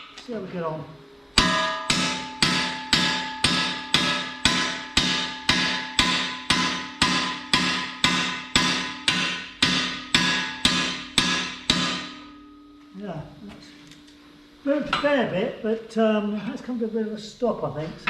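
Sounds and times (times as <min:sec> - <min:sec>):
hammer ringing on steel bar: 0:01.4 - 0:13.0.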